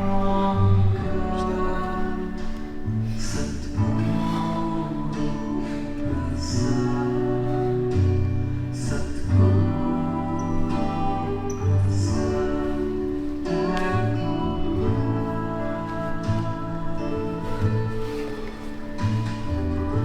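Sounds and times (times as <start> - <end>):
slow gentle background music: 0.0 - 20.0.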